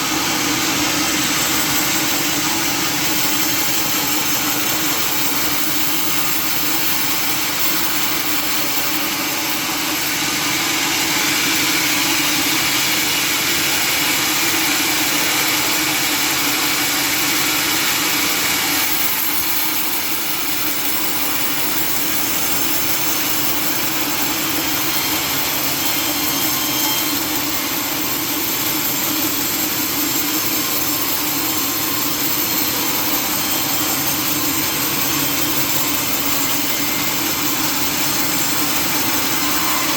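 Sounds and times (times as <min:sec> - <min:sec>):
sawmill machinery running: 0:00.0 - 0:39.9.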